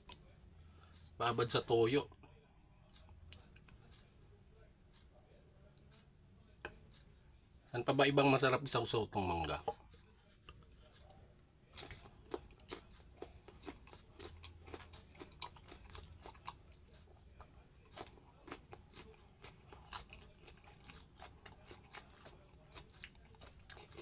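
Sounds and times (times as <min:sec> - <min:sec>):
chewing crisp crunches: 0:09.5 - 0:24.0.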